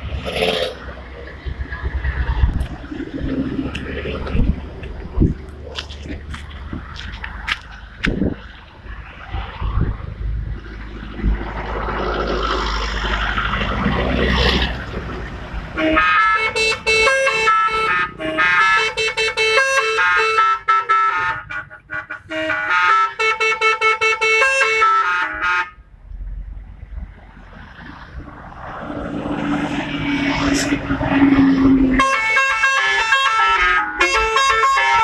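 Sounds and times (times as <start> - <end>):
low vehicle rumble: 0.0 - 23.2, 25.7 - 35.0
musical bus horn tune: 15.7 - 25.8, 30.2 - 35.0.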